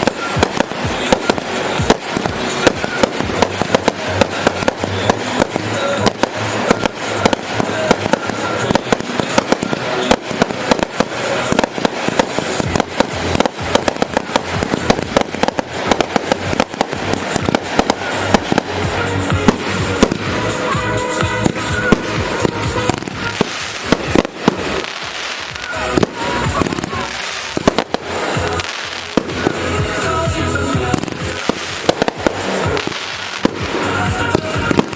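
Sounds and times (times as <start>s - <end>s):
fireworks bursts and crackling: 0.0s - 34.9s.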